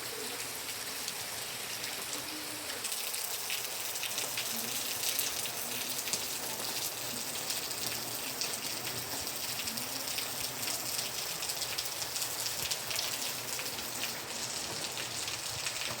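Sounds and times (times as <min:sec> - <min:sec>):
rain falling: 0:00.0 - 0:16.0
raindrops ticking on surfaces: 0:00.0 - 0:16.0.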